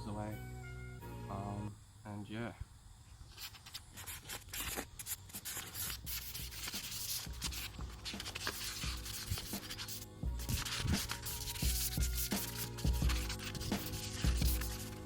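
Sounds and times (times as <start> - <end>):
background music with held notes: 0.0 - 1.7, 7.3 - 15.0
hand sanding with sandpaper: 3.3 - 15.0.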